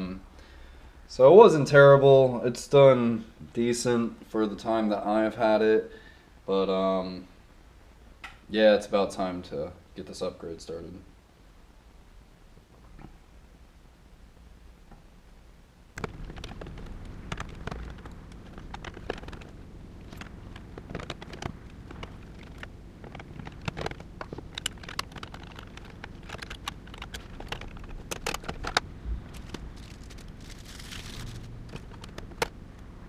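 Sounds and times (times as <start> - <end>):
plastic and metal parts clicking: 16.0 - 32.6.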